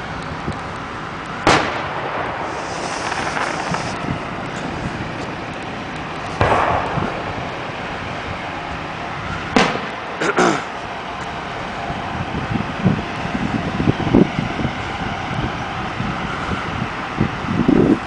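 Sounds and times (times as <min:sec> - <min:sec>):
hissing crackle of fireworks: 0:00.0 - 0:12.1
firework booms: 0:01.4 - 0:04.0, 0:06.4 - 0:07.7, 0:09.5 - 0:10.1.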